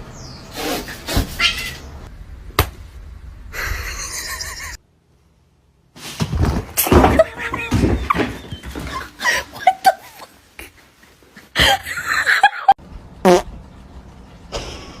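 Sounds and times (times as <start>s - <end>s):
pitched squeaks: 6.8s - 9.2s.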